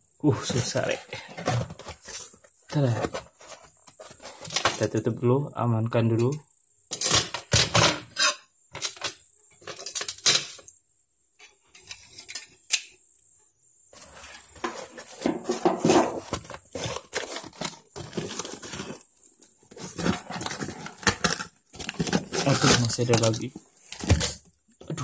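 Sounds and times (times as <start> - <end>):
cardboard tearing: 16.1 - 19.0, 19.8 - 24.4.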